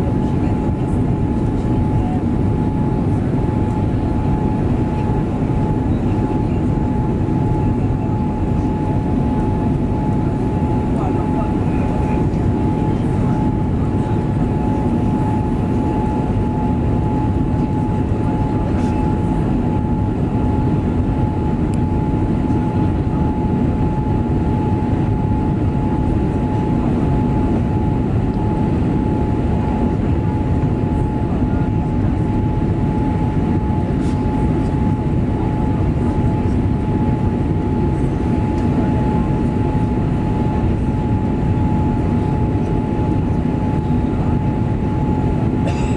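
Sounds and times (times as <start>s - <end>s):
jet engines whining: 0.0s - 45.9s.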